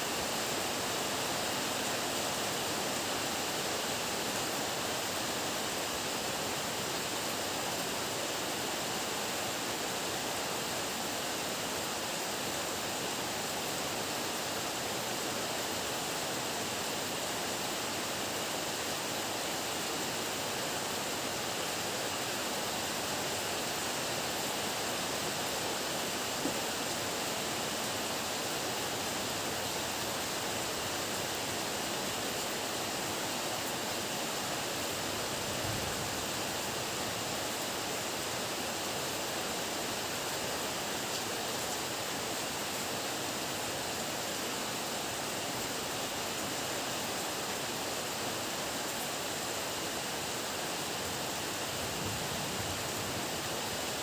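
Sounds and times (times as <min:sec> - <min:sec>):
heavy rain hissing: 0:18.7 - 0:44.4, 0:45.2 - 0:54.0.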